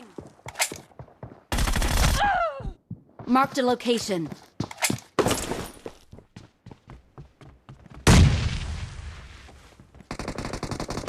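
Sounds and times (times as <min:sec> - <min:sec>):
rapid automatic gunfire: 0:01.5 - 0:02.1, 0:10.1 - 0:11.0.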